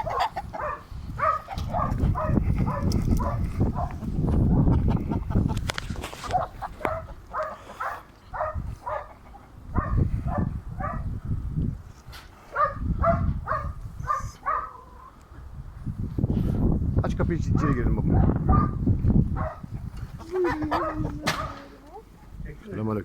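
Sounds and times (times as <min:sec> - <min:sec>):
dog barking: 0:00.0 - 0:04.0, 0:06.3 - 0:09.2, 0:09.8 - 0:11.1, 0:12.5 - 0:14.9, 0:17.6 - 0:18.8, 0:19.4 - 0:19.7, 0:20.6 - 0:21.6.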